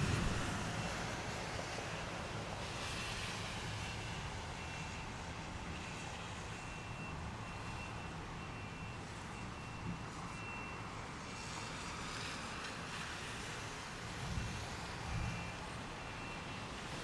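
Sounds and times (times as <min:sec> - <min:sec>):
low rumble: 0:00.0 - 0:00.6
heavy rain: 0:00.0 - 0:09.3, 0:09.9 - 0:17.0.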